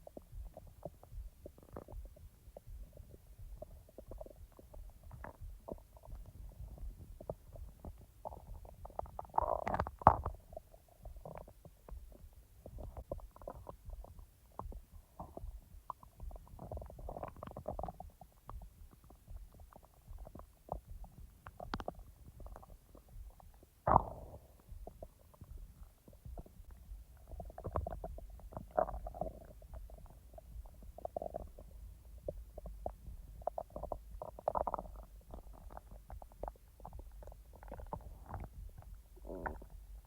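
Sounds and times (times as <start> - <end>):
stomach gurgling: 0.0 - 40.0.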